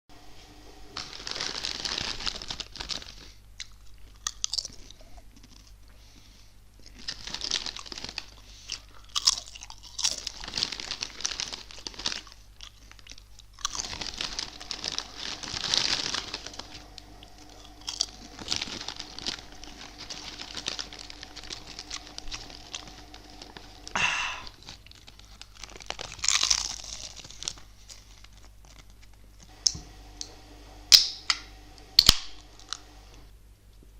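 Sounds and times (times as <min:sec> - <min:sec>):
potato chips crunching: 0:01.0 - 0:05.9, 0:06.8 - 0:29.8, 0:32.0 - 0:32.9
quiet chewing: 0:03.1 - 0:15.4, 0:16.4 - 0:29.6.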